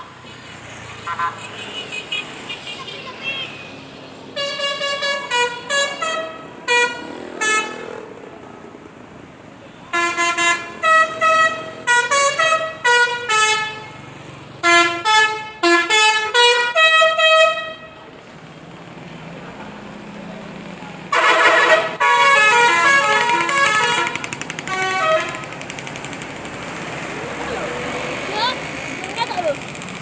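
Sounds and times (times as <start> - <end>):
musical bus horn tune: 4.4 - 7.8, 9.9 - 14.0, 14.6 - 18.0, 21.1 - 25.5.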